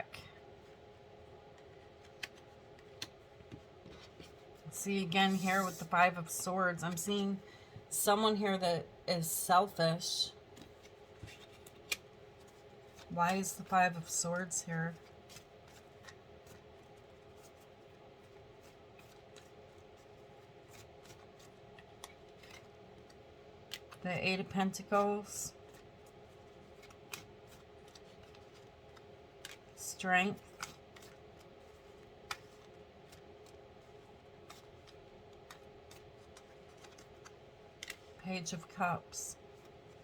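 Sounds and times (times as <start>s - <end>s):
low room hum: 0.0s - 40.0s
cards being handled: 1.4s - 7.2s, 10.4s - 24.0s, 24.7s - 38.7s
cards clicking being laid down: 34.4s - 38.0s.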